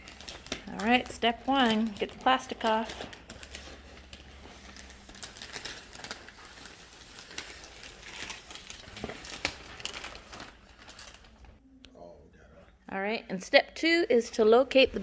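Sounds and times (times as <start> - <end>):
plastic wrapping crinkling: 0.0 - 11.6.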